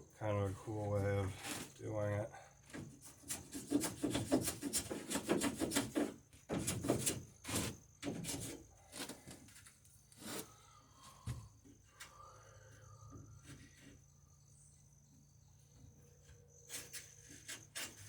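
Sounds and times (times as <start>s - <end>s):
hand tool scraping wood: 0.7s - 1.8s, 2.6s - 10.6s, 16.6s - 18.0s.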